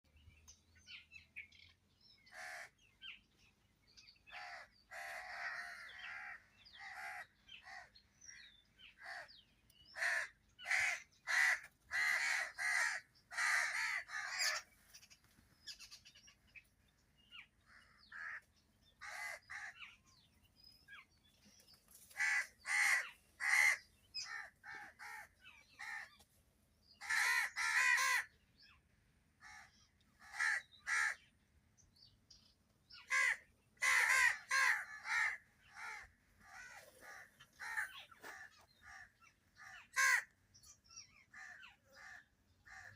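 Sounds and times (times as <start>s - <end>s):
crows cawing: 2.3s - 2.8s, 4.3s - 14.8s, 17.6s - 20.3s, 22.1s - 26.2s, 27.0s - 28.4s, 29.4s - 31.3s, 33.0s - 40.4s, 41.1s - 42.9s.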